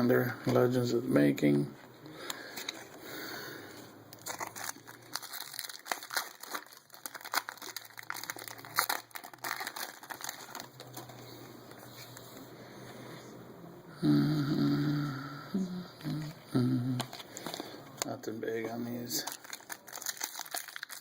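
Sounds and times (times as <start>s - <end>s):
cards being handled: 3.7s - 12.5s, 17.0s - 21.0s
wrapper crinkling: 4.1s - 12.3s, 17.0s - 21.0s.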